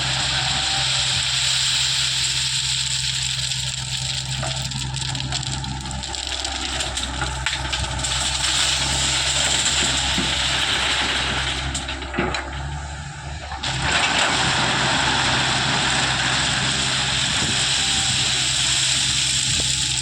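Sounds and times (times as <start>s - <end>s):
diesel engine running: 0.0s - 20.0s.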